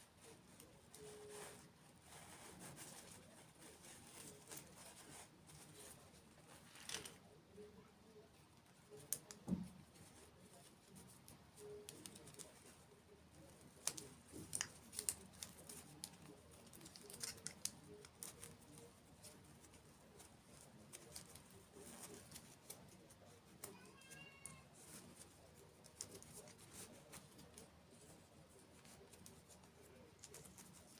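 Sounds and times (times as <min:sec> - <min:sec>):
crunching sweets: 0:10.2 - 0:30.9.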